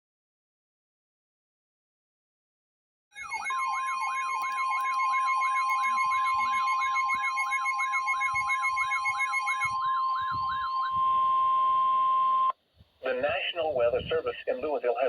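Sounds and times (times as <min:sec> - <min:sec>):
electronic siren warbling: 0:03.2 - 0:12.5
steady warning tone: 0:03.2 - 0:12.5.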